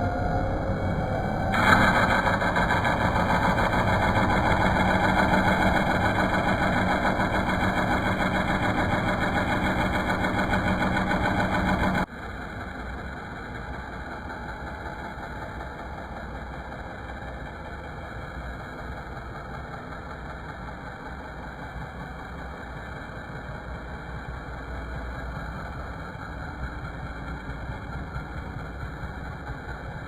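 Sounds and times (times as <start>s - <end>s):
machine droning: 0.0s - 16.2s.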